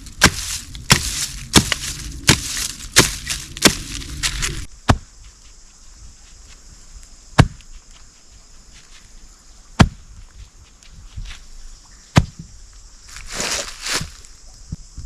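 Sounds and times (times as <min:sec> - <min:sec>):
rustling crunch: 0:00.0 - 0:04.7, 0:13.1 - 0:14.4
axe chopping wood: 0:00.0 - 0:05.1, 0:07.4 - 0:07.6, 0:09.8 - 0:10.0, 0:12.2 - 0:12.4.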